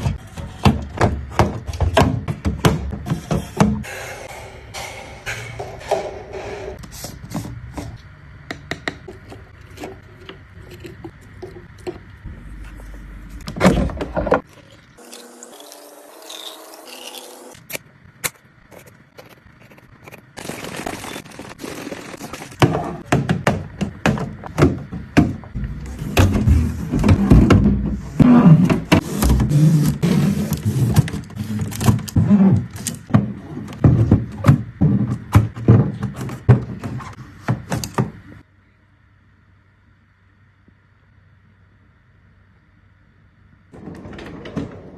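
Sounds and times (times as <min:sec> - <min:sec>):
items knocking and scraping: 0:00.0 - 0:08.0, 0:18.8 - 0:38.4.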